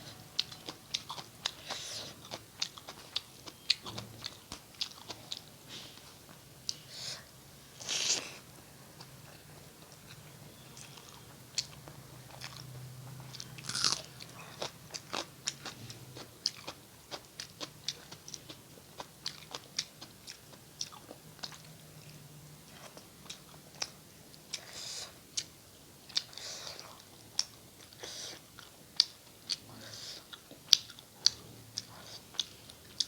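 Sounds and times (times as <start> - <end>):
person chewing food: 0.1 - 7.0, 7.8 - 33.0
crunchy bites: 13.4 - 14.1.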